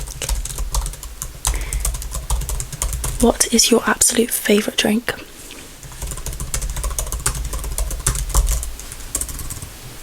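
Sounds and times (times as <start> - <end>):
tapping on computer keyboard: 0.0 - 3.2, 5.8 - 9.7.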